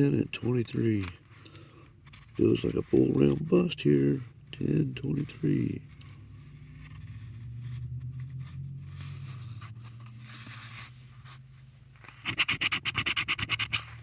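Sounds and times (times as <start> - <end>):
low steady hum: 0.0 - 12.2
coin scratching ticket: 2.4 - 6.0, 12.1 - 14.0.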